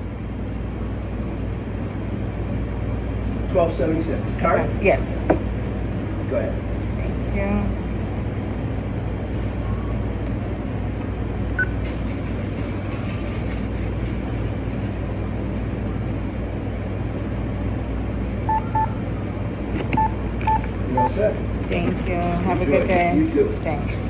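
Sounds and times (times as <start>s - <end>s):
short electronic beeps: 18.5s - 19.0s.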